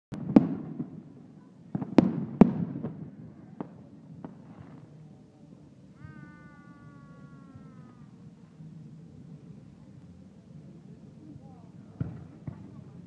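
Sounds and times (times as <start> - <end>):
faint firework pops: 0.1 - 1.0, 1.7 - 5.0, 11.9 - 13.0
fireworks bangs with echo: 0.1 - 5.2, 11.9 - 13.0.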